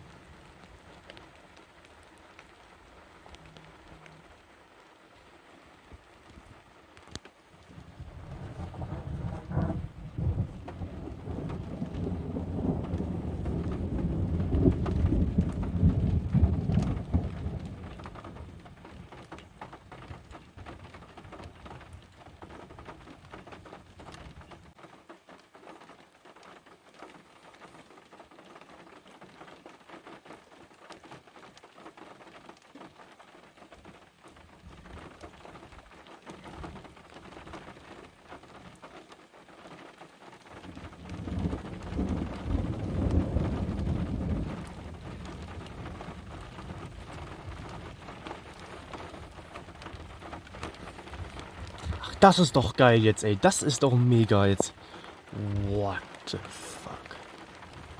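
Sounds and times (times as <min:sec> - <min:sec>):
steady rain falling: 0:00.0 - 0:57.9
thunder rumbling: 0:07.9 - 0:18.8, 0:41.0 - 0:52.8.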